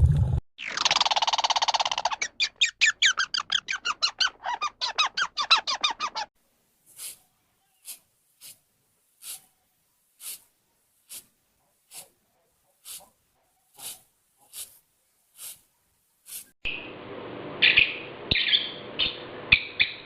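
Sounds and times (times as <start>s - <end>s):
animal breathy puffs: 11.8s - 14.8s.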